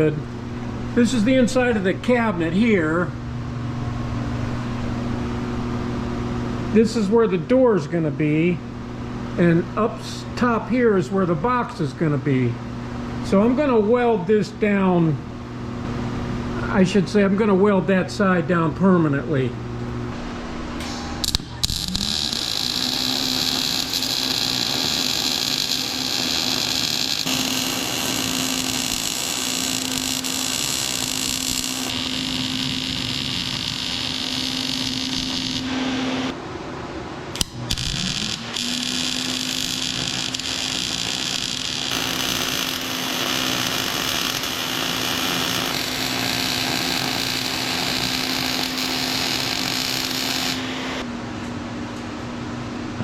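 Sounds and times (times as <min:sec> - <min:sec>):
steady hum: 0:00.0 - 0:53.0
welding arc crackling: 0:21.2 - 0:36.4, 0:37.4 - 0:51.0.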